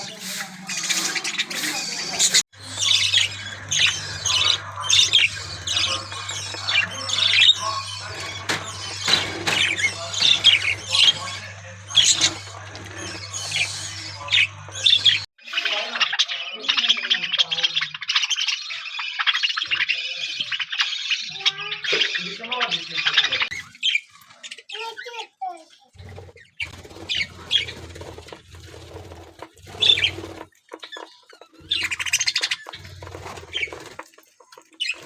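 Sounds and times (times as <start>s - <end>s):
budgerigars squawking: 0.0s - 24.0s
budgerigars twittering: 0.0s - 35.0s.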